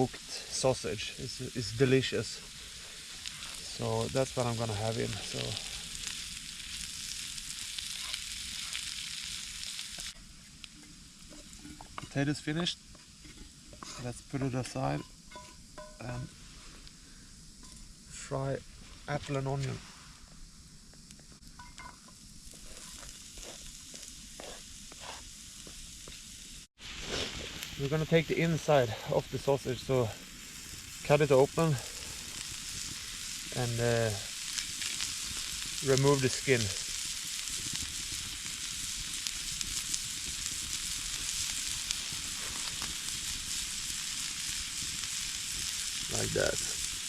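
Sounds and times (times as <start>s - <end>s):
food sizzling in a pan: 0.0s - 47.0s.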